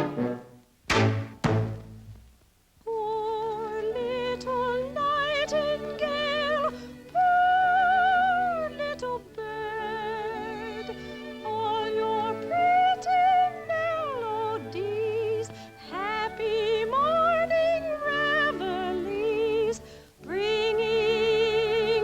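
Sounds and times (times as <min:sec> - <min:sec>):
sustained accompaniment: 0:00.0 - 0:02.3
operatic wordless melody: 0:00.0 - 0:02.4.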